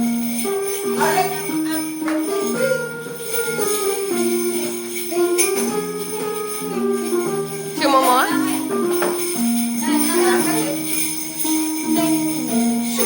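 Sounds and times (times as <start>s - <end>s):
music with jingle bells: 0.0s - 13.0s.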